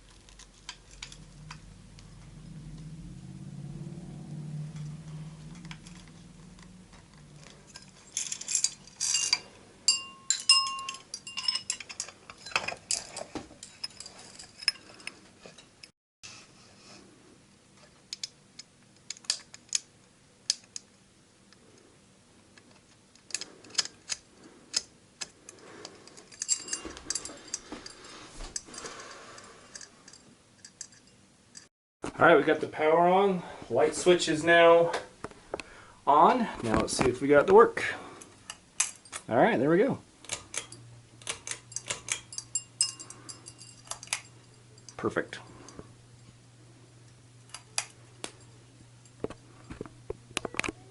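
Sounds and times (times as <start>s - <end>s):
ringing clinks: 7.7s - 15.1s, 26.3s - 28.0s, 40.6s - 45.0s
hands clinking on metal fixture: 7.7s - 15.7s, 40.3s - 45.0s.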